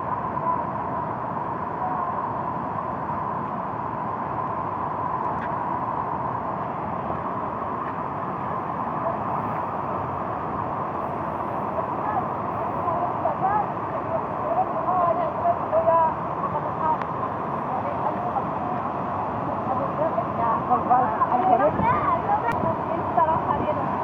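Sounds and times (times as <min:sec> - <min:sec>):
waterfall rushing roar: 0:05.6 - 0:24.0.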